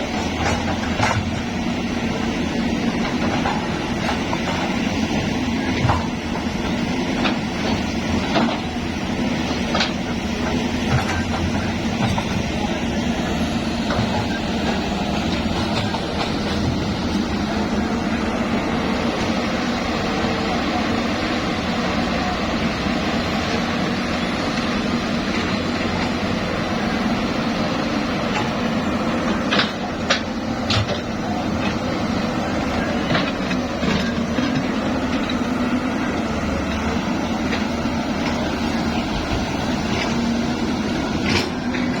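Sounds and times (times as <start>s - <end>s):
diesel engine running: 0.0s - 42.0s.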